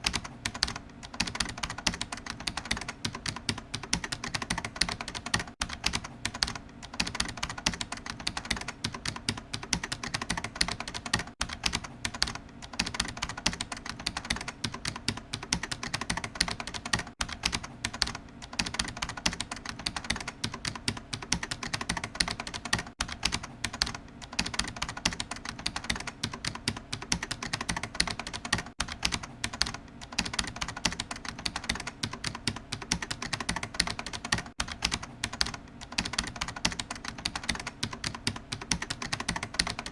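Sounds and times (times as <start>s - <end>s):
keyboard typing: 0.0s - 39.9s.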